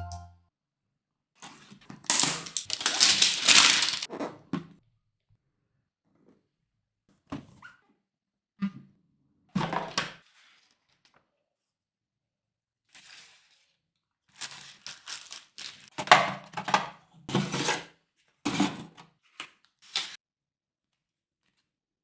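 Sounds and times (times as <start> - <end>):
packaging rustling and tearing: 2.1 - 4.1, 14.9 - 15.9.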